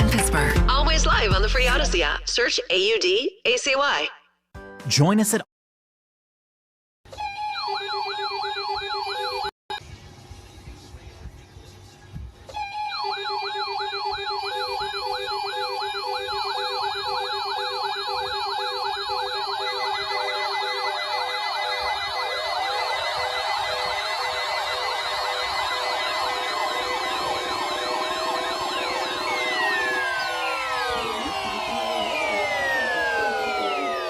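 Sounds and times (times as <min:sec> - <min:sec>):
electronic siren yelp: 0:07.1 - 0:09.5, 0:12.5 - 0:34.0
steady alarm tone: 0:07.2 - 0:09.5, 0:12.6 - 0:34.0
wailing siren sweeps: 0:12.5 - 0:34.0.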